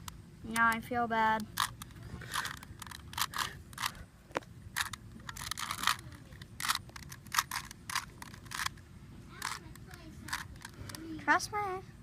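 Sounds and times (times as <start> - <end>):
puzzle cube plastic clicks: 1.4 - 8.8, 9.4 - 11.1.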